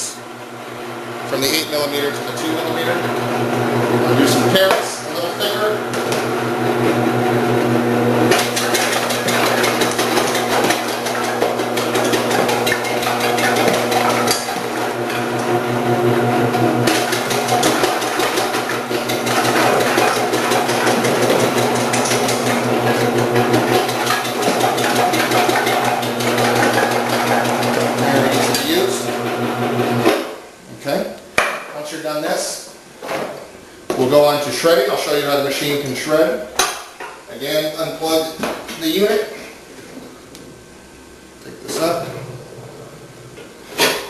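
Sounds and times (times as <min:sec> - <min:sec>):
electric motor humming: 0:05.2 - 0:30.0.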